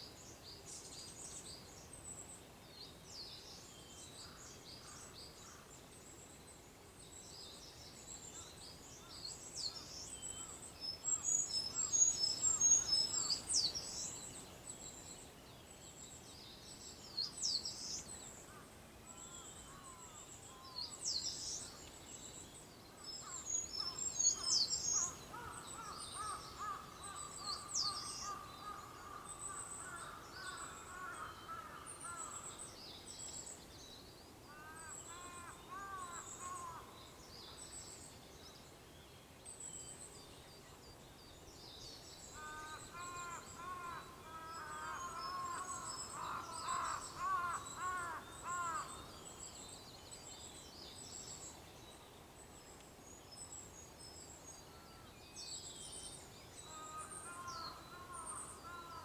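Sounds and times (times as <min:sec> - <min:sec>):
faint background hiss: 0:00.0 - 0:59.0
songbirds chirping and trilling: 0:07.2 - 0:59.0
rapid repeated bird calls: 0:42.4 - 0:49.8.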